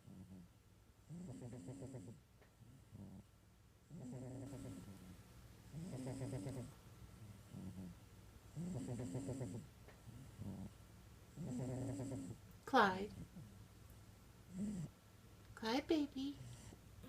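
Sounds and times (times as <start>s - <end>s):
cat snoring: 0.0s - 0.5s, 1.1s - 3.3s, 3.9s - 5.1s, 5.7s - 10.8s, 11.4s - 12.4s, 14.5s - 14.9s.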